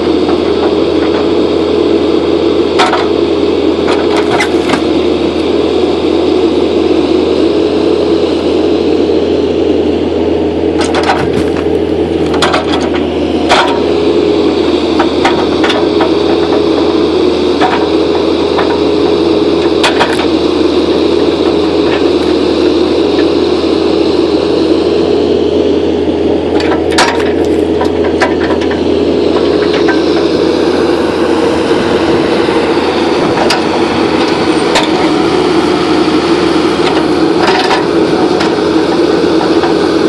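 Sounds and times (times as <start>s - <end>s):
excavator engine and hydraulics humming: 0.0s - 40.0s.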